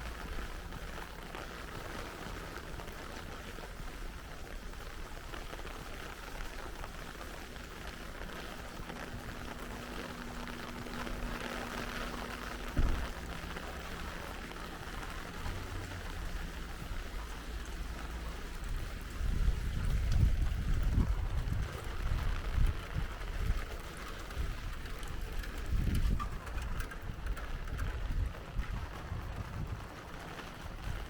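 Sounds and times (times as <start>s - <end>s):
rain falling: 0.0s - 31.0s
loud thump: 12.7s - 13.1s.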